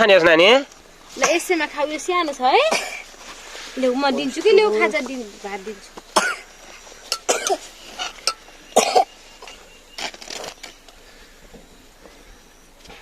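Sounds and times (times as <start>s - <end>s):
person coughing: 2.7s - 3.0s, 6.2s - 6.5s, 7.2s - 7.6s, 8.8s - 9.1s.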